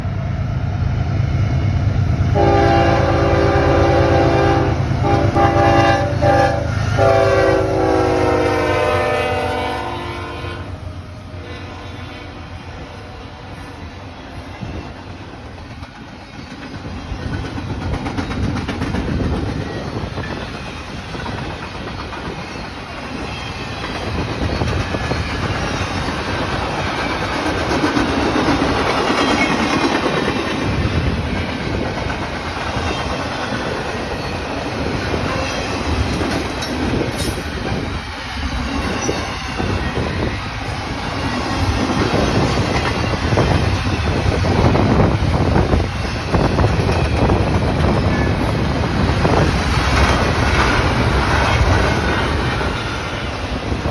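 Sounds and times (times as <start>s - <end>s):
freight train wheels clattering: 13.5s - 53.9s.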